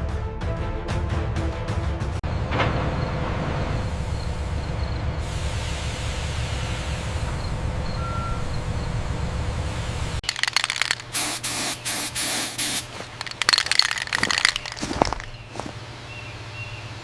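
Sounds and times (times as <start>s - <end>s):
loud irregular hissing bursts: 11.1s - 13.0s.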